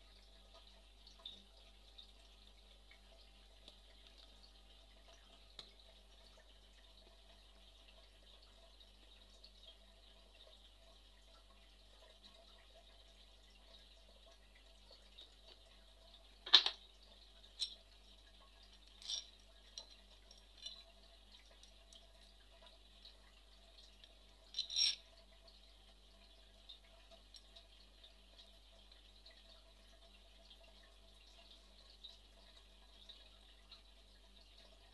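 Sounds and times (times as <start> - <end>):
metal tools clinking and knocking: 16.5 - 16.8, 17.6 - 17.8, 18.8 - 20.8, 24.5 - 25.1.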